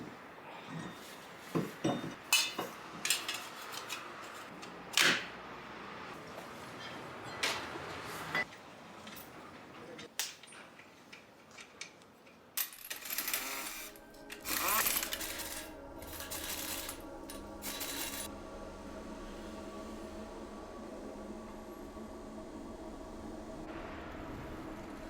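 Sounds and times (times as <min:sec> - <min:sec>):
background music: 0:12.7 - 0:25.0.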